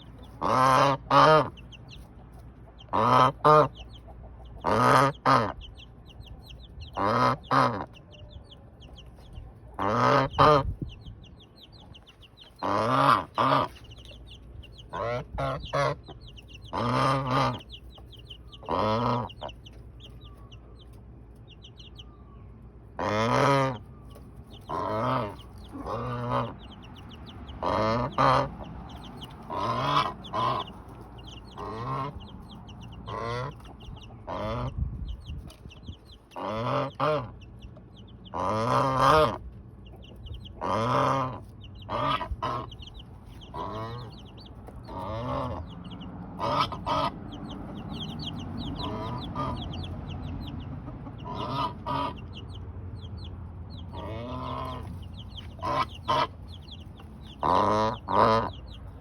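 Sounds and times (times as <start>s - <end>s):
goose honking: 0.0s - 1.7s, 2.8s - 3.8s, 4.6s - 5.6s, 6.9s - 8.0s, 9.8s - 10.7s, 12.6s - 14.0s, 14.9s - 17.7s, 18.6s - 19.5s, 23.0s - 23.9s, 24.6s - 26.8s, 27.5s - 34.8s, 36.4s - 37.4s, 38.3s - 39.4s, 40.6s - 50.1s, 51.0s - 52.5s, 53.8s - 58.8s
chicks peeping softly: 0.0s - 59.0s.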